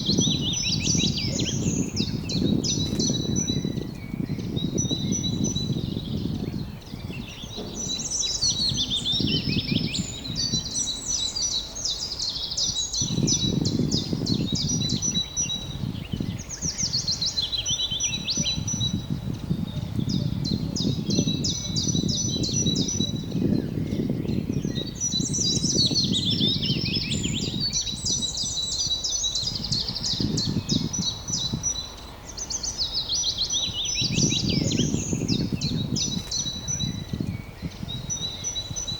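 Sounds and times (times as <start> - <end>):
low rumbling noise: 0.0 - 14.7
songbirds singing: 0.0 - 38.9.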